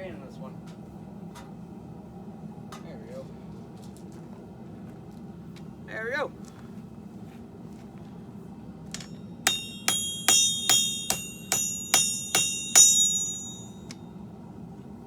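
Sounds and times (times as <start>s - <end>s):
hammer striking steel on anvil: 8.9s - 14.0s.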